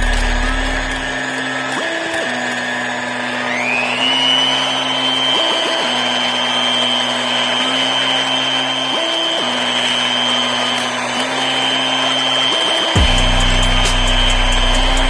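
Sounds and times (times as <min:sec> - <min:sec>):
electric mixer motor whining: 0:00.0 - 0:15.0.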